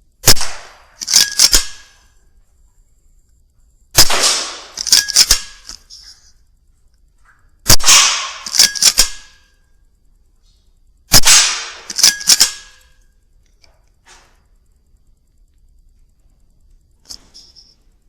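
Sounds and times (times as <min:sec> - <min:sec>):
air rifle shots: 0:00.2 - 0:02.0, 0:04.0 - 0:05.8, 0:07.7 - 0:09.4, 0:11.1 - 0:12.9
sharp metallic clicks: 0:00.2 - 0:02.1, 0:04.0 - 0:06.1, 0:07.7 - 0:09.6, 0:11.0 - 0:13.9.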